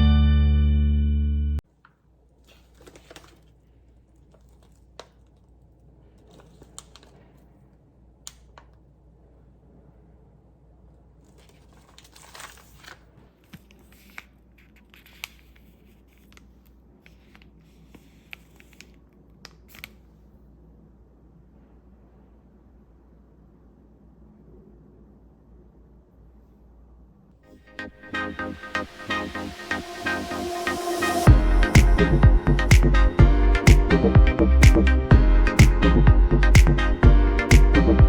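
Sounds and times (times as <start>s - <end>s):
crinkling and tearing: 1.8s - 7.6s, 11.2s - 16.5s.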